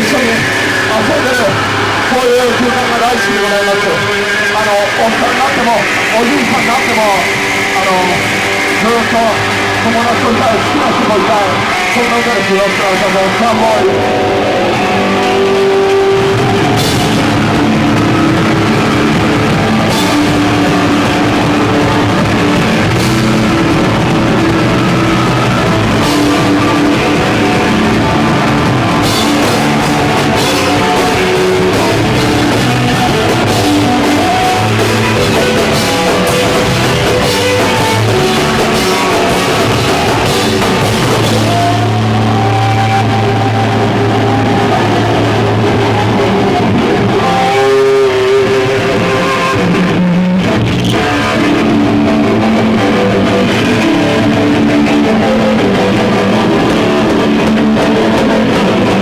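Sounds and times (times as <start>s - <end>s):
punk band playing live: 0.0s - 59.0s.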